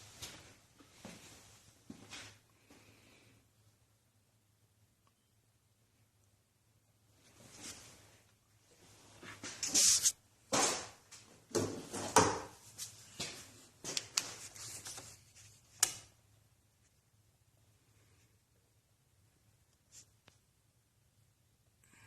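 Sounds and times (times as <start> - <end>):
scraping and rustling handling noises: 11.7 - 15.9.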